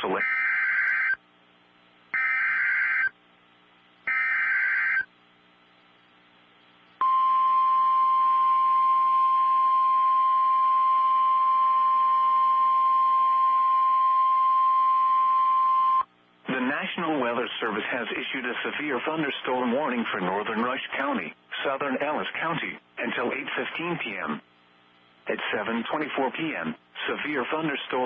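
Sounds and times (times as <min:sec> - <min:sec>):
steady warning alarm tone: 0:00.0 - 0:01.2, 0:02.2 - 0:03.2, 0:04.0 - 0:05.1, 0:07.0 - 0:16.0.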